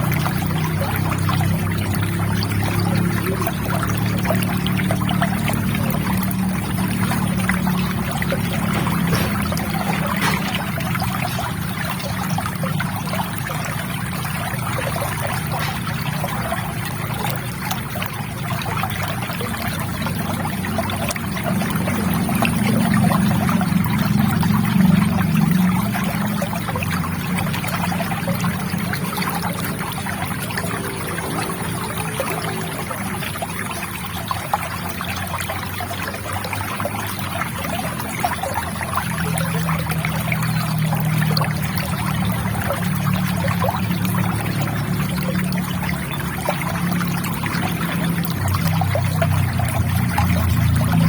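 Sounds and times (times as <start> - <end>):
river water trickling and babbling: 0.0 - 51.0.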